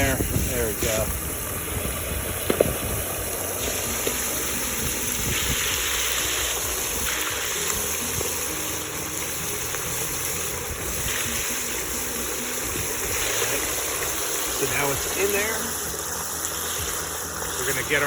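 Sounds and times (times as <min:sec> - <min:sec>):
oil bubbling and sizzling: 0:00.0 - 0:18.0
sharp oil pops: 0:02.4 - 0:02.8.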